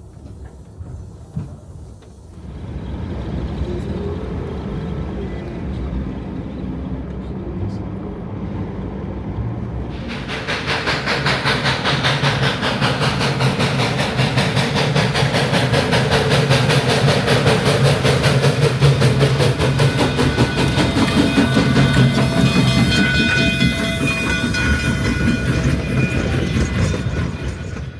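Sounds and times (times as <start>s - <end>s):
train wheels clattering on rails: 0.0s - 7.2s, 9.5s - 27.9s.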